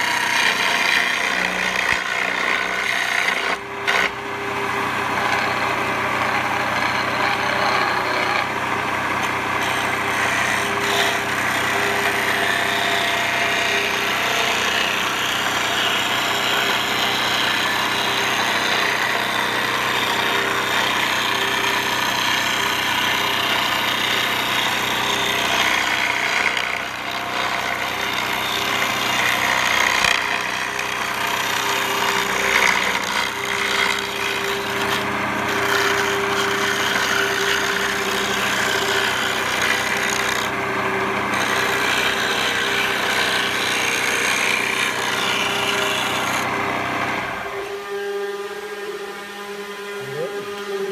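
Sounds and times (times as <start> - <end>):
lathe motor humming: 0.0 - 50.9
tool scraping spinning wood: 0.0 - 50.9.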